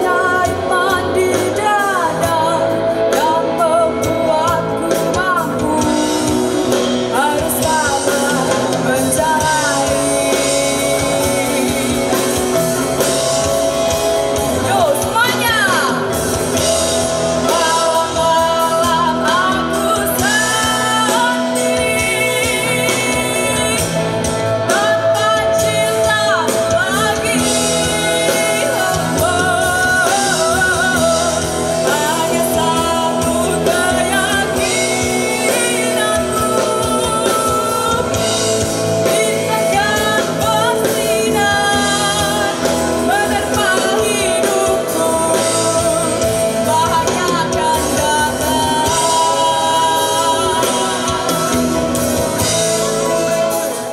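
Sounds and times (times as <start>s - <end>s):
band playing pop-rock: 0.0s - 53.9s
person singing: 0.0s - 53.9s.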